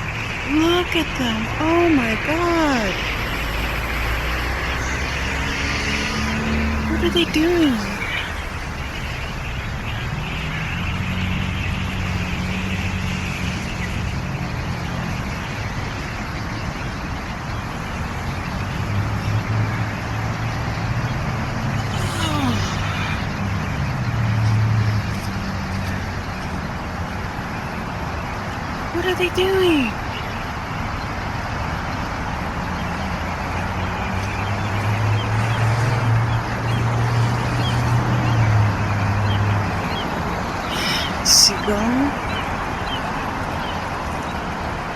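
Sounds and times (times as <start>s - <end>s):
high bird calls: 0.0s - 11.9s, 21.8s - 23.7s, 37.5s - 44.0s
vehicle engine humming: 0.0s - 19.5s
motor vehicle engine hum: 0.0s - 44.9s
road traffic noise: 0.0s - 44.9s.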